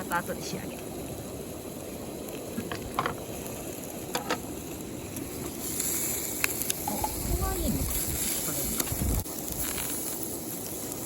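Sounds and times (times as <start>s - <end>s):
food sizzling on griddle: 0.0s - 11.0s.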